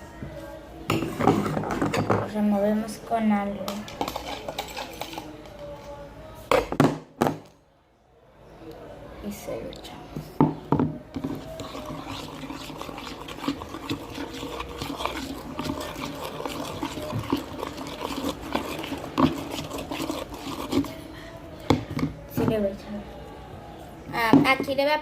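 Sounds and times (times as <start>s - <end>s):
slime squelching: 11.2s - 21.1s.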